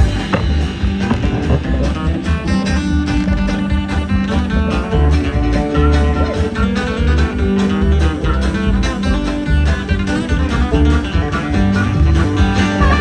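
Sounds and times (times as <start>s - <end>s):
banjo picking: 0.0s - 13.0s
guitar picking: 0.0s - 13.0s
steady bass line: 0.0s - 13.0s.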